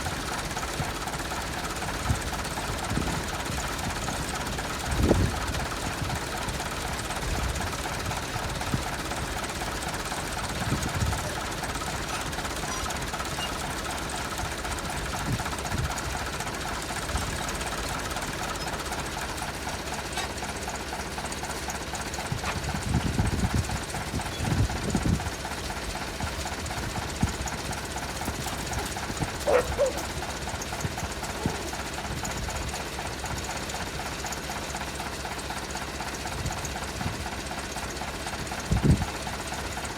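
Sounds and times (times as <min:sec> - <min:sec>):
tractor engine knocking: 0:00.0 - 0:39.9.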